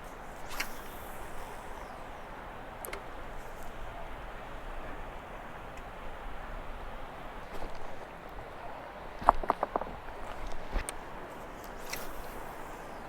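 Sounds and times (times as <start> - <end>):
faint clicks: 0.0 - 4.1.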